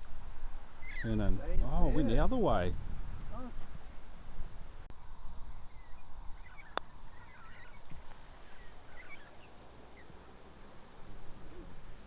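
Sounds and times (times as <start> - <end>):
low wind rumble: 0.0 - 12.0
birds chirping: 0.8 - 2.3, 5.4 - 12.0.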